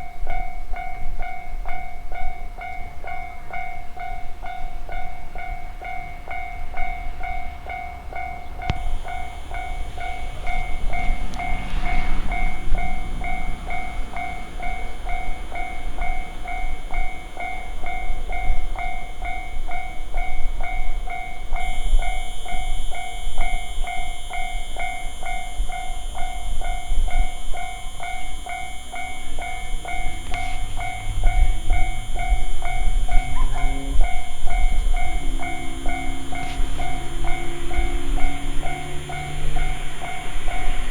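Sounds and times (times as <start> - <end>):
electric train rumbling past: 0.0 - 40.9
level-crossing alarm bell: 0.0 - 40.9
rising motor whine: 6.8 - 17.5, 26.2 - 40.9.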